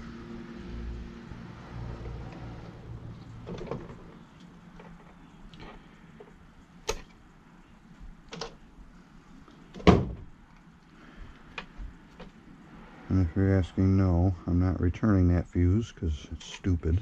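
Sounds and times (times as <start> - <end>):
low steady hum: 0.0 - 17.0
tools clicking and knocking: 3.5 - 7.2.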